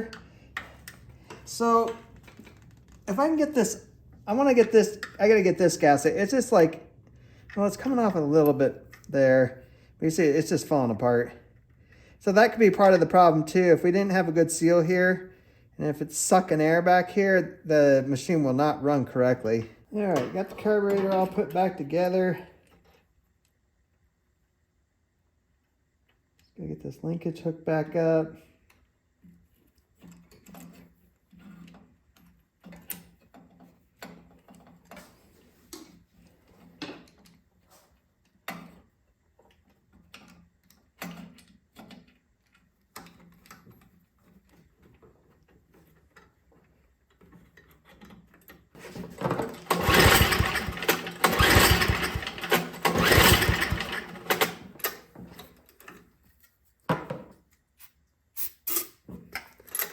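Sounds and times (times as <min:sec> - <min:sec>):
small engine firing: 0:49.6 - 0:54.6.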